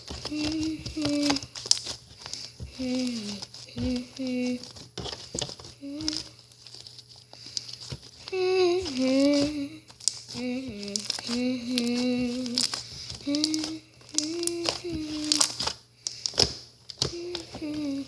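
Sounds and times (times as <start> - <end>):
girl singing wordless tune: 0.1 - 1.5, 2.7 - 4.7, 5.8 - 6.4, 8.3 - 15.6, 17.1 - 18.0
slime crackling and clicking: 8.8 - 17.4.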